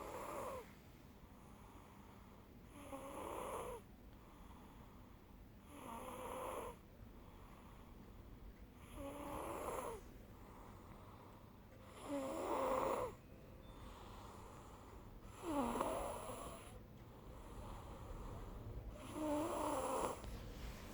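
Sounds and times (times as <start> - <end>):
loud snores: 0.0 - 0.7, 2.7 - 3.8, 5.7 - 6.8, 8.8 - 10.0, 11.8 - 13.2, 15.3 - 16.8, 19.0 - 20.3
faint breathing: 0.0 - 3.0, 4.1 - 5.4, 7.0 - 9.2, 9.9 - 20.9.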